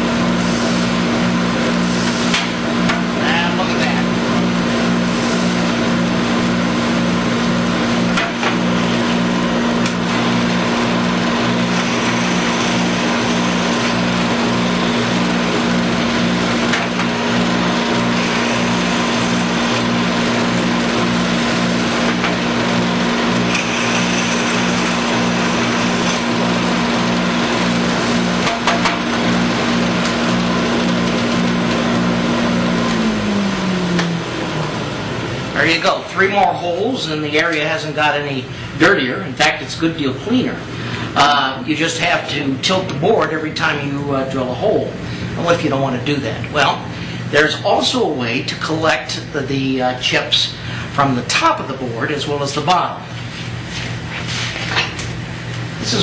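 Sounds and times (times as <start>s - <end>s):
machine motor running: 0.0s - 37.0s
shop vacuum running: 0.0s - 56.0s.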